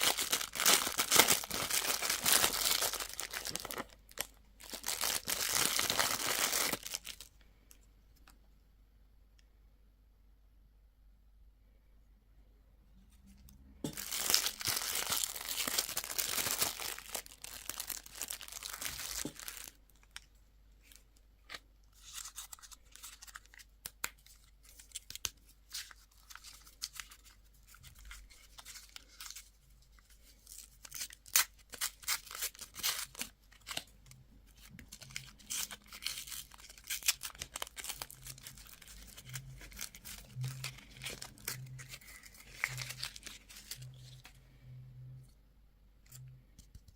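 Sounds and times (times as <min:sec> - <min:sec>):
packaging tearing: 0:00.0 - 0:07.3, 0:14.0 - 0:20.1, 0:34.9 - 0:44.2
wrappers crinkling: 0:00.0 - 0:07.4, 0:13.9 - 0:20.3, 0:34.5 - 0:44.3.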